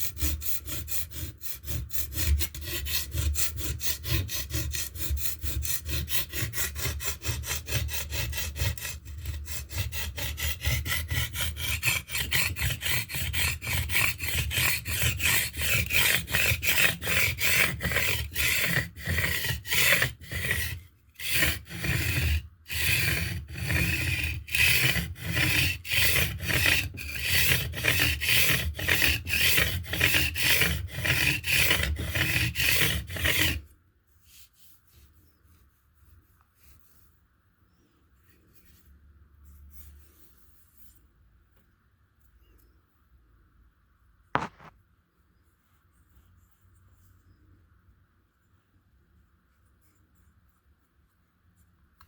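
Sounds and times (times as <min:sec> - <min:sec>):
blade grinding on sharpening stone: 0:00.0 - 0:33.6.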